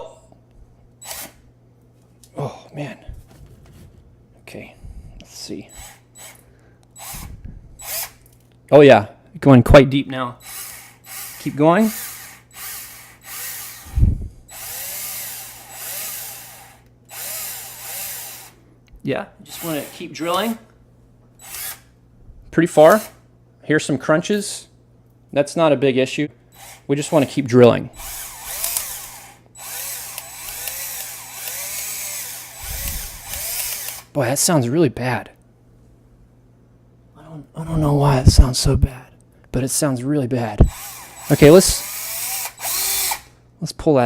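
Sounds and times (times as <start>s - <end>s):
power drill boring into phone: 1.0s - 1.4s, 5.7s - 6.4s, 7.0s - 8.2s, 10.4s - 18.6s, 19.5s - 20.6s, 21.4s - 21.9s, 26.6s - 34.1s, 40.6s - 43.3s.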